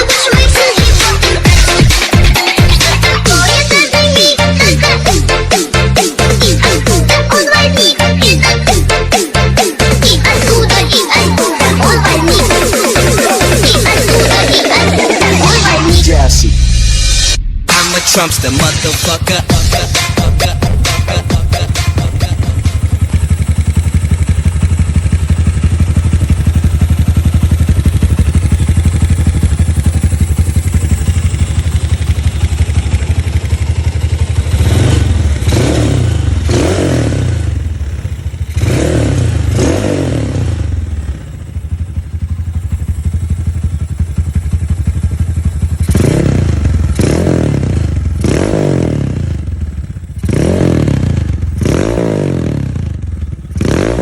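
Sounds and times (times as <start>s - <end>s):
motorcycle engine idling and revving: 0.0s - 54.0s.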